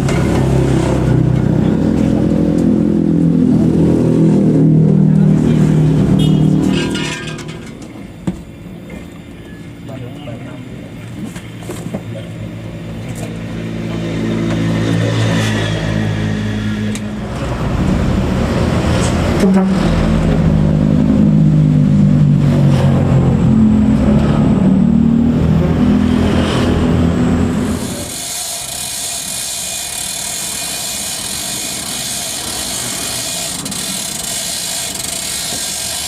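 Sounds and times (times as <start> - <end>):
heavy vehicle engine revving: 0.0 - 6.8, 13.3 - 28.1.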